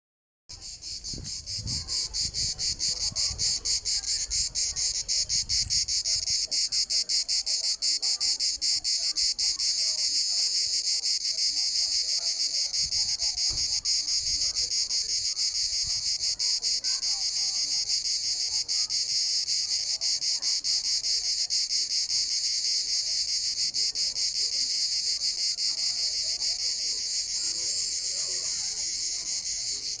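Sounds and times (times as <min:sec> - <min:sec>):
cicadas buzzing: 0:00.5 - 0:30.0.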